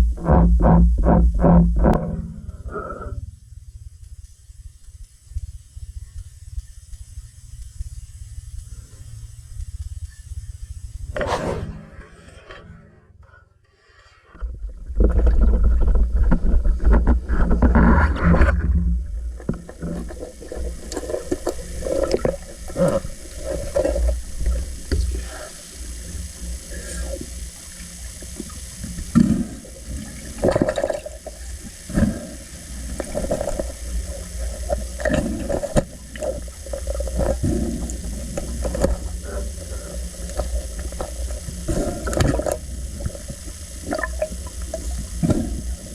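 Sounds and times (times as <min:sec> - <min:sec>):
water sloshing and bubbling: 0:27.9 - 0:45.9.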